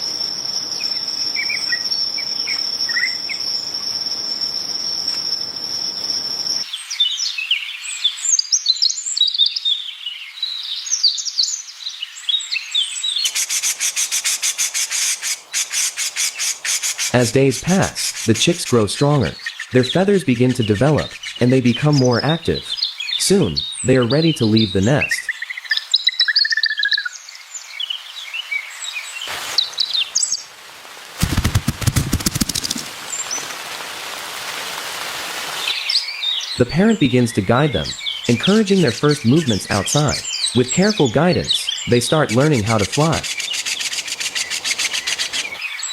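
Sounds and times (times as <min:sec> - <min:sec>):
insect trill: 0:00.0 - 0:06.7, 0:13.3 - 0:25.2, 0:29.3 - 0:45.9
small birds chirping: 0:00.0 - 0:30.6, 0:31.2 - 0:34.6, 0:35.3 - 0:45.9
even hiss: 0:13.2 - 0:25.2, 0:29.1 - 0:45.6
rhythmic scratching: 0:17.1 - 0:21.8, 0:31.2 - 0:32.8
rapid rattling clicks: 0:31.2 - 0:32.8.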